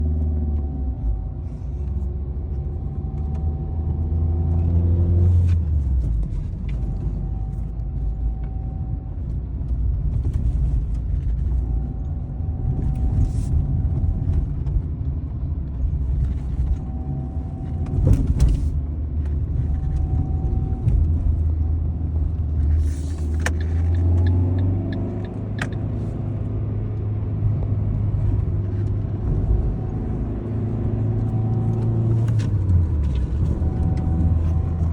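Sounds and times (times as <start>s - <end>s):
car engine revving: 15.9s - 34.9s.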